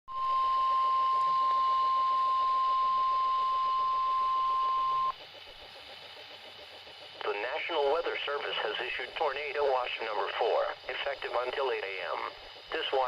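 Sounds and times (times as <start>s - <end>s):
steady high-pitched alarm tone: 0.1s - 13.0s
radio static: 7.2s - 13.0s.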